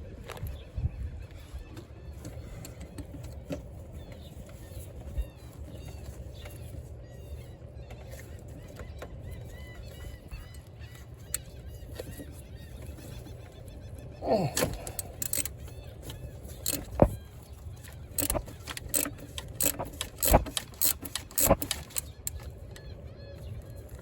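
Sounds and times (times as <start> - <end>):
wind rumbling on microphone: 0.0 - 24.0
parts clicking and clattering: 14.2 - 23.0.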